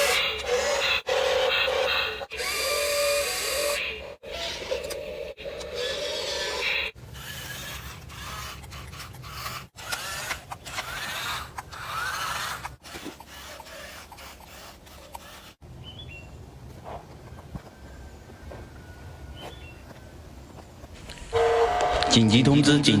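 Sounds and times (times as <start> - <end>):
motor whines: 0.0 - 15.6, 20.9 - 22.3
toy motors whirring and grinding: 0.0 - 15.6.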